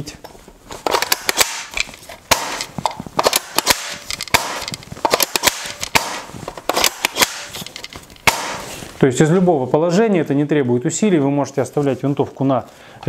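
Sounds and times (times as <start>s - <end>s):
rifle bolt cocking clacks: 0.9s - 8.6s.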